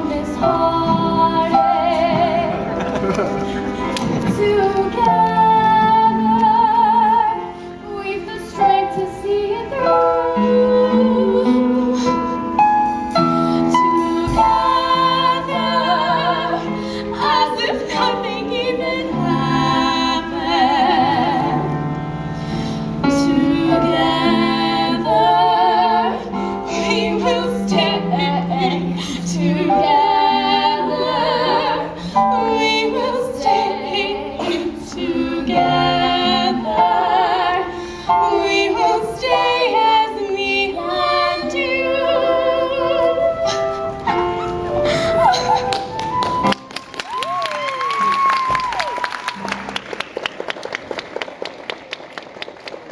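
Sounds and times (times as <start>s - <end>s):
woman singing with vibrato: 14.3s - 21.8s, 23.0s - 43.6s.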